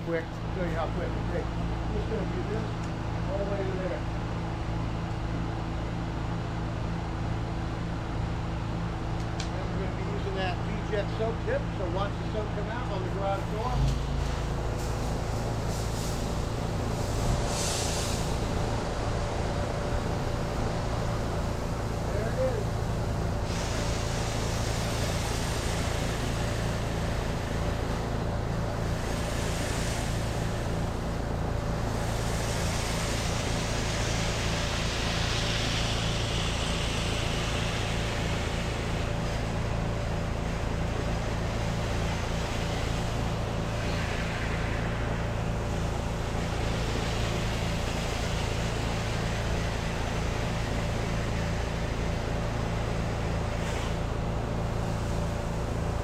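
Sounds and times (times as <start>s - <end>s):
pressure washer engine hum: 0.0s - 56.0s
hissing water spray: 13.8s - 56.0s.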